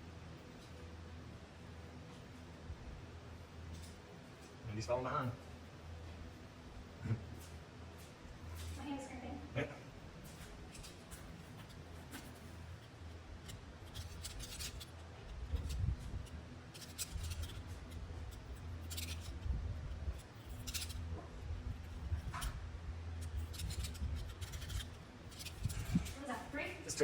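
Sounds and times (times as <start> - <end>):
low steady hum: 0.0 - 27.0
dry scratching strokes: 10.8 - 21.2.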